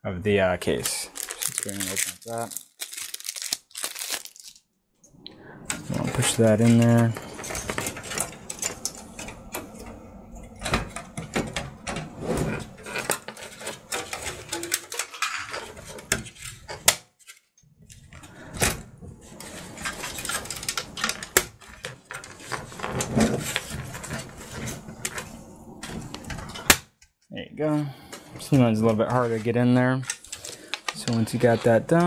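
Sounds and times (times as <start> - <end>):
sheet metal clicking and rattling: 5.7 - 12.1, 12.8 - 16.9.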